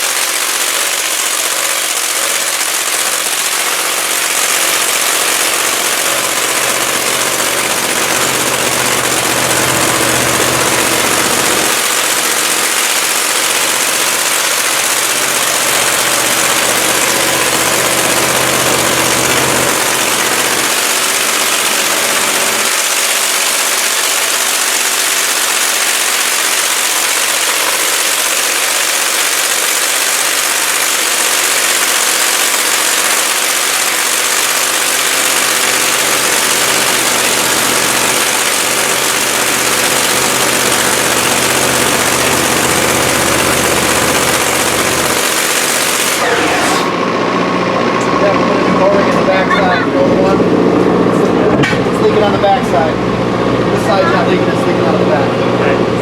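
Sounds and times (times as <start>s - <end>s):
racing engine idling loudly: 0.0s - 56.0s.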